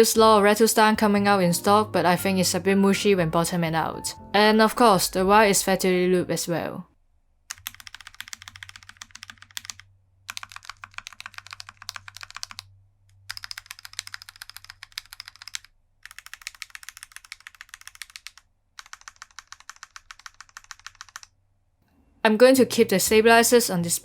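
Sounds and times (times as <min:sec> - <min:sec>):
mechanical keyboard typing: 0:07.5 - 0:21.3.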